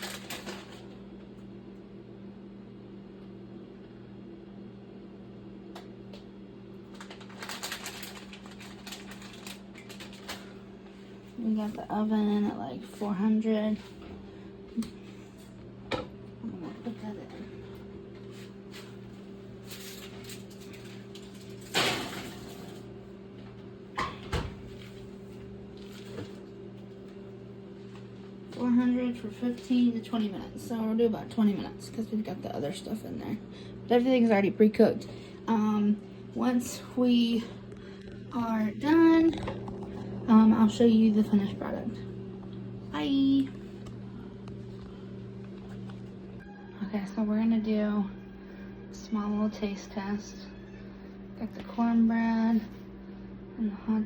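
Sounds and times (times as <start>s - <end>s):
crackly rustling: 0.0s - 1.0s, 6.8s - 11.9s
low electrical hum: 0.0s - 54.0s.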